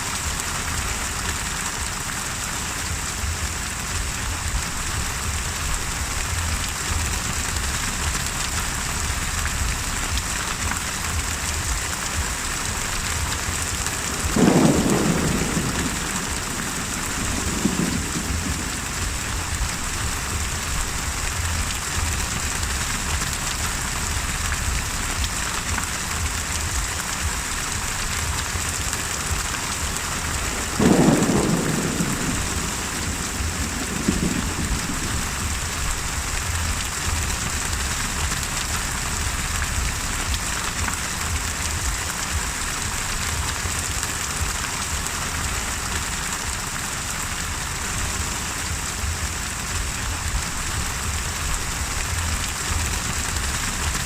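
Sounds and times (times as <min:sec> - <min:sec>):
heavy rain: 0:00.0 - 0:54.0
rumble of thunder: 0:00.3 - 0:45.1, 0:47.6 - 0:54.0
thunderclap: 0:02.9 - 0:23.4, 0:24.4 - 0:44.7.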